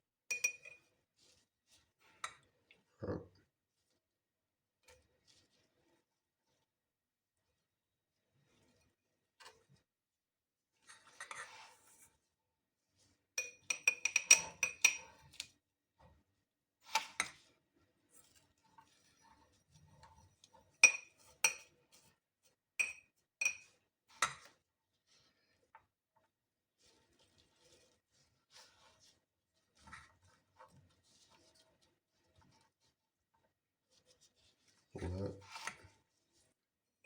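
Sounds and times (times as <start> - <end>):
utensil clinking on glass jar: 0.3 - 0.8, 13.4 - 15.1.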